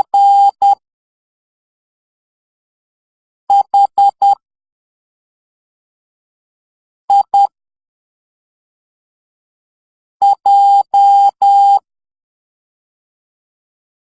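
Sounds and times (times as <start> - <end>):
morse code beeps: 0.2 - 0.8, 10.2 - 11.8.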